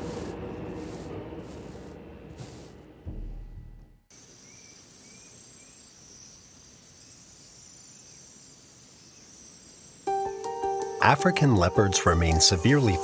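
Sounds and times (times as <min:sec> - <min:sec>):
short insect chirps: 0:04.1 - 0:10.2
cricket trill: 0:04.1 - 0:11.0.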